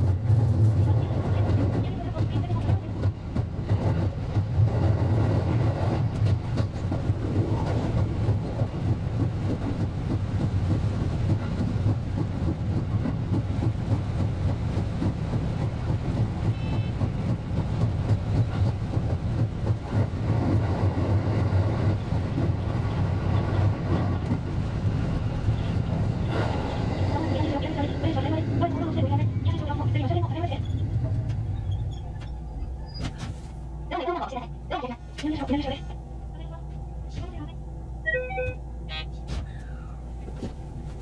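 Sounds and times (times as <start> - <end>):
electric train rumbling: 0.0 - 41.0.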